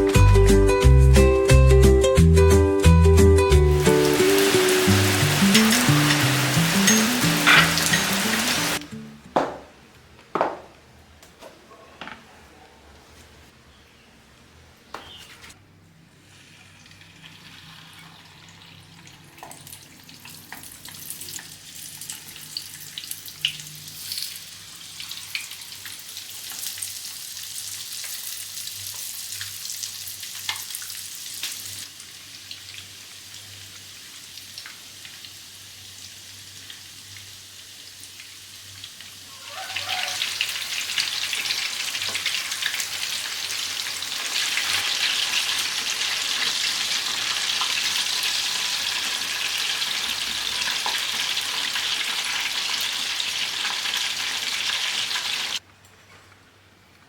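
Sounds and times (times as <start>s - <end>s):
chicken sizzling in hot oil: 3.7s - 8.9s, 16.2s - 55.6s
oil crackling and popping: 3.8s - 8.9s, 16.6s - 35.4s, 40.3s - 55.6s.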